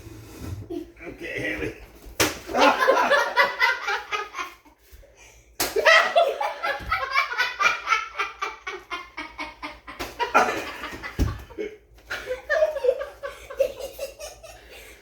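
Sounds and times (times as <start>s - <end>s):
people laughing: 2.5s - 4.7s, 5.8s - 14.7s.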